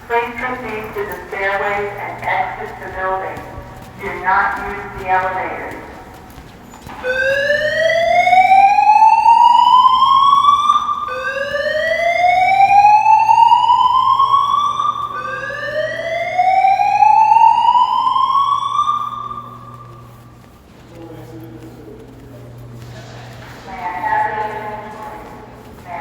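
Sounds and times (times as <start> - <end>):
fire alarm whoop tone: 0.0 - 20.6.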